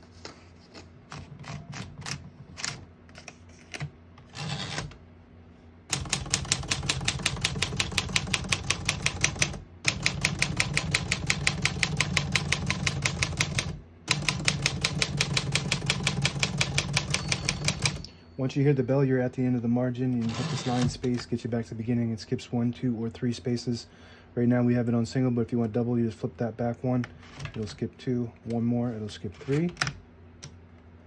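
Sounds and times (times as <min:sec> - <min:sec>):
typewriter keystrokes: 0:05.9 - 0:18.1.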